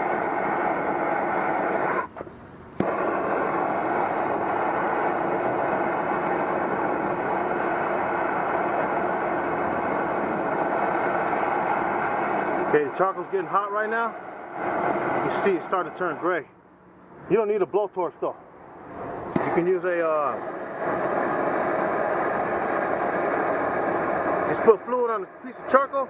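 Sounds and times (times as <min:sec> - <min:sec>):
blowtorch flame burning: 0:00.0 - 0:16.4, 0:18.8 - 0:26.0
sharp click of blowtorch: 0:00.2 - 0:09.3, 0:19.3 - 0:19.8.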